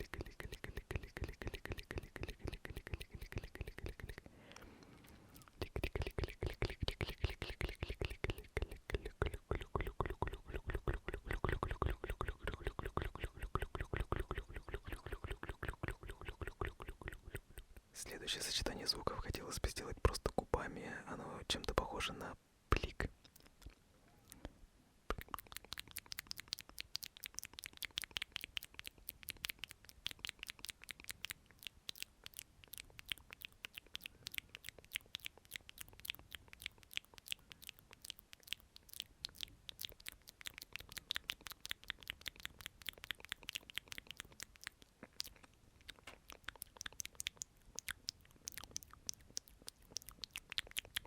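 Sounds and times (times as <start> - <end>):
wet lip clicks and pops: 0.0 - 20.5, 21.6 - 24.5, 25.1 - 51.0.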